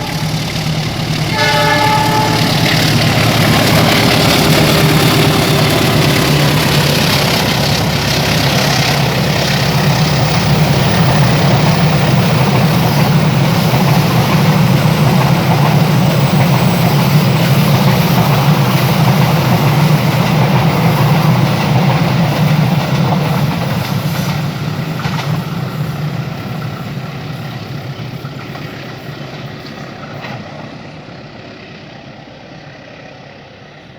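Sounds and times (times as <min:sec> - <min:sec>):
train horn blast: 0:00.0 - 0:06.2
train rumbling on rails: 0:00.0 - 0:33.9.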